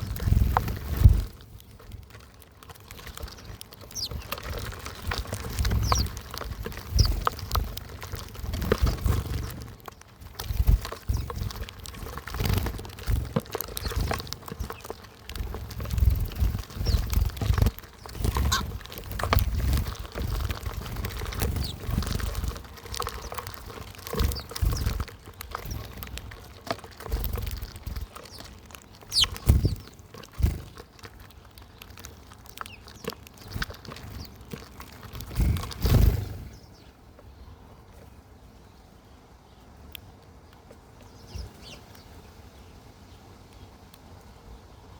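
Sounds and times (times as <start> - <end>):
bird wing flutters: 0.0 - 36.9.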